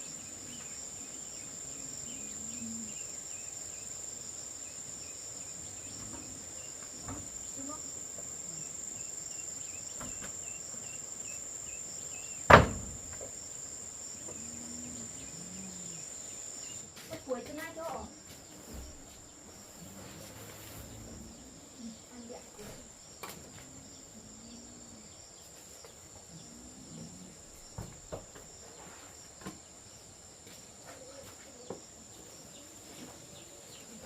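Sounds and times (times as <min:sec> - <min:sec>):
sharp knock: 0:12.5 - 0:12.9.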